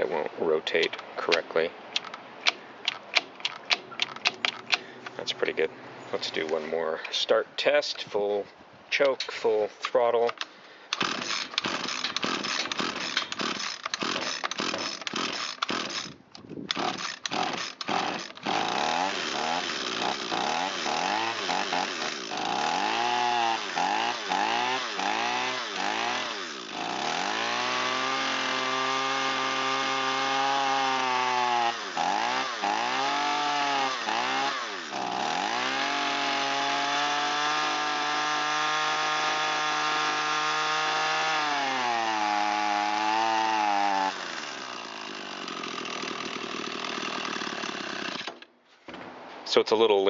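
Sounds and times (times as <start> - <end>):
string trimmer engine revving: 11.0 - 16.1, 16.7 - 48.4.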